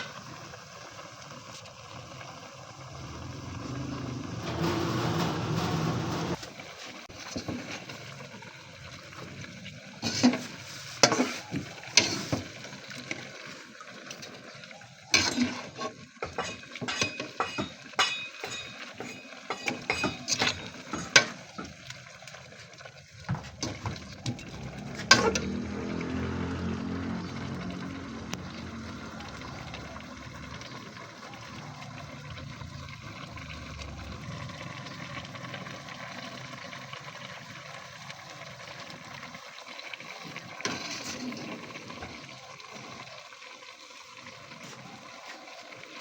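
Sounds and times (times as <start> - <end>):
utensils clinking against dishes: 15.2 - 21.7, 23.5 - 25.6.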